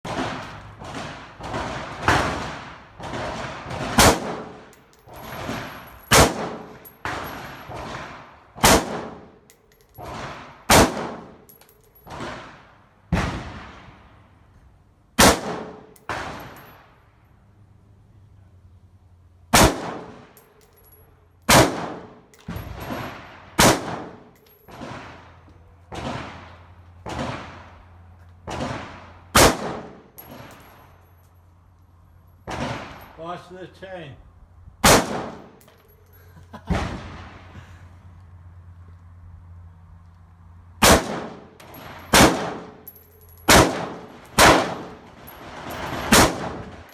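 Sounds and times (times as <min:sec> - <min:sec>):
faint distant gunshots: 0:00.1 - 0:04.7, 0:25.9 - 0:27.8, 0:28.4 - 0:30.0
rifle shots with ringing echo: 0:00.1 - 0:14.0, 0:15.2 - 0:16.8, 0:19.5 - 0:31.0, 0:32.4 - 0:33.2, 0:34.8 - 0:36.1, 0:40.8 - 0:46.9.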